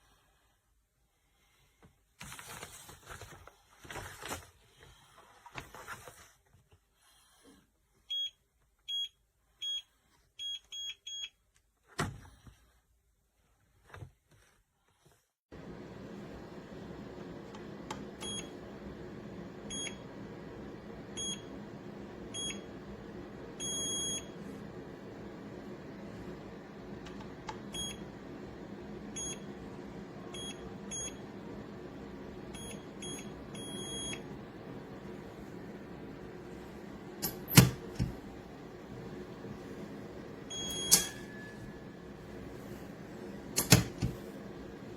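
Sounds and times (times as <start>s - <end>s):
safe clunking: 37.2s - 38.2s, 40.5s - 41.4s, 43.5s - 44.3s
keypad beeping: 40.5s - 41.5s.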